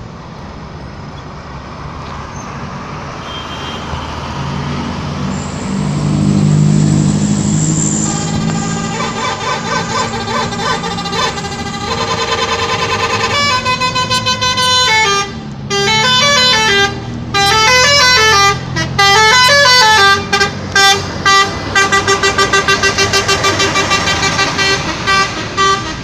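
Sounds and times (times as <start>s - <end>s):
bus musical horn tune: 7.0s - 26.0s.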